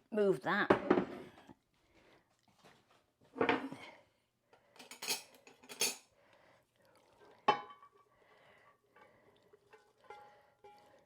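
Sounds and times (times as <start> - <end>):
utensils and dishes clattering: 4.8 - 6.0.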